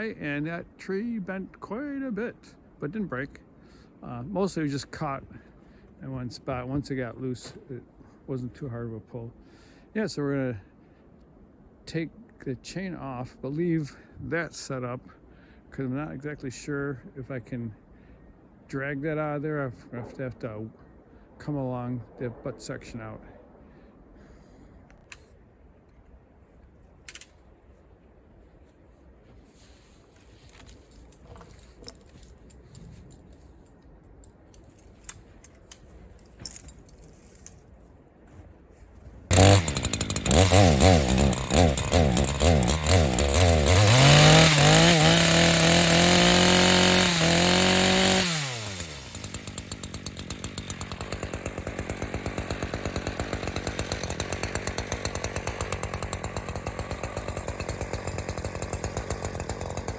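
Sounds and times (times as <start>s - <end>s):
chainsaw revving and idling: 39.3s - 59.9s.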